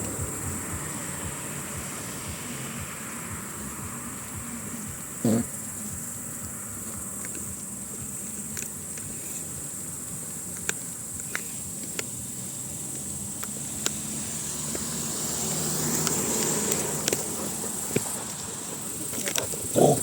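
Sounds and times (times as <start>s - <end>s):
insects chirring: 0.0s - 20.0s
vehicle passing: 0.0s - 20.0s
sharp clicks: 7.0s - 12.2s, 12.9s - 15.0s, 15.7s - 18.4s.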